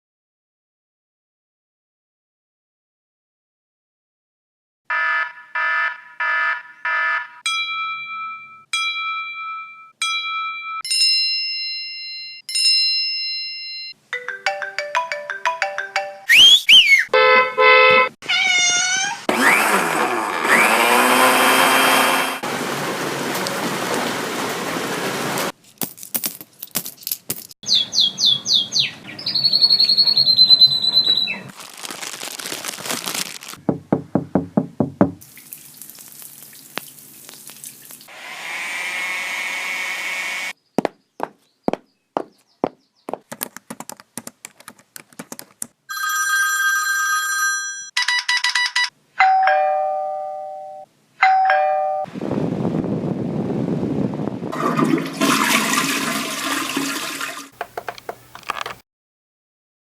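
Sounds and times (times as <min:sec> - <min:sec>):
ringing bell-like tones: 0:07.5 - 0:16.3
two-note doorbell chime: 0:07.5 - 0:16.3, 0:47.9 - 0:52.1
chirping whistles: 0:16.3 - 0:17.1, 0:27.6 - 0:31.5.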